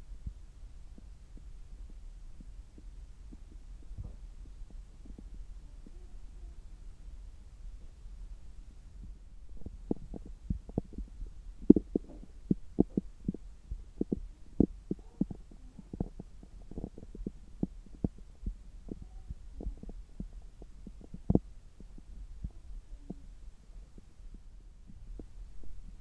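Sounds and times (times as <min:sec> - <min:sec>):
steady low hum: 0:00.0 - 0:26.0
faint gurgles: 0:08.6 - 0:26.0.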